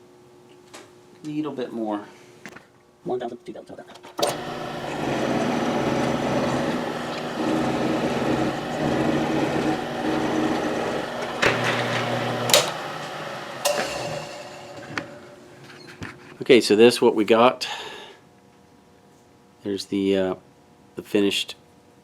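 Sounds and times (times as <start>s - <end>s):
sharp clicks and knocks: 4.2s - 15.3s
end mill cutting brass: 4.2s - 15.6s
milling machine motor hum: 4.2s - 15.6s.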